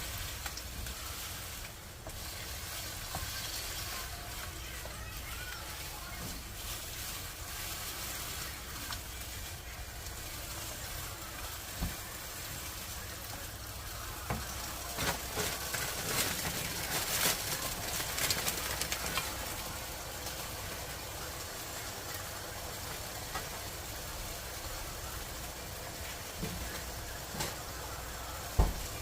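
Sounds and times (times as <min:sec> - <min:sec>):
vegetables sizzling in a pan: 0:00.0 - 0:29.0
utensil scraping a pan: 0:00.8 - 0:08.9.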